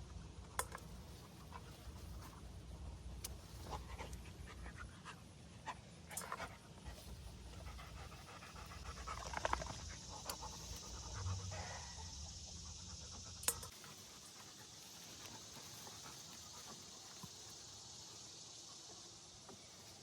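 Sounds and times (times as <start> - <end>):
dog panting: 3.6 - 18.0.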